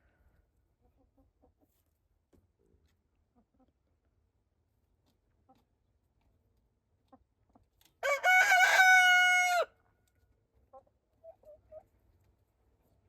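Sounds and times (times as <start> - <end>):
rooster crowing: 8.0 - 9.7.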